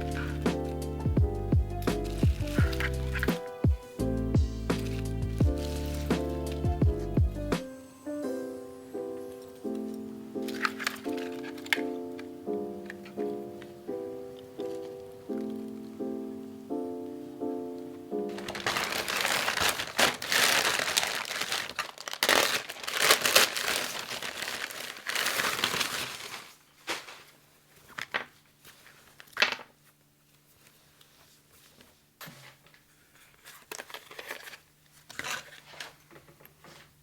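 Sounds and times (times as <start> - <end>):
packaging crinkling: 0.0 - 0.8, 2.0 - 3.6, 4.8 - 6.7, 10.4 - 15.9, 18.3 - 29.8, 33.3 - 36.0
background music: 0.0 - 19.8.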